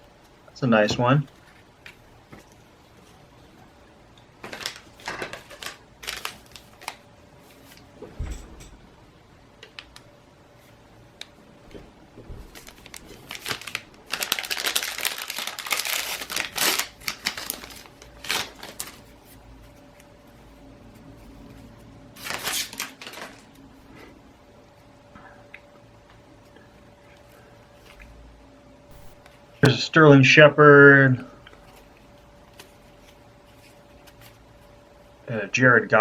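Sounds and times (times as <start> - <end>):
plastic wrapper crinkling: 4.4 - 7.1, 12.4 - 20.1, 22.1 - 23.6.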